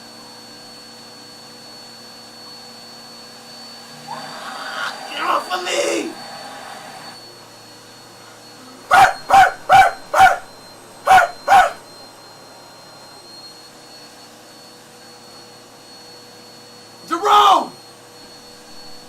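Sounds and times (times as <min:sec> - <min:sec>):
vacuum cleaner humming: 0:00.0 - 0:19.0
dog barking: 0:08.9 - 0:11.8.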